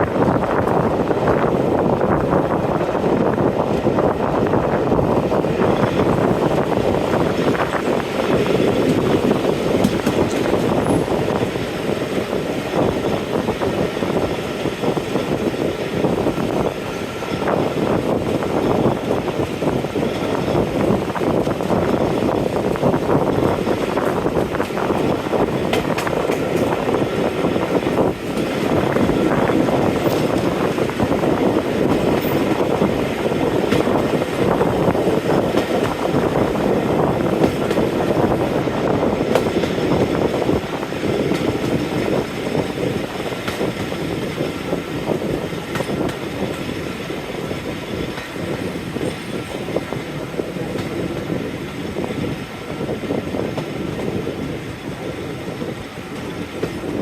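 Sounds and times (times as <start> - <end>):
train wheels rumbling on rails: 0.0 - 57.0
wheels clicking over rail joints: 0.0 - 57.0.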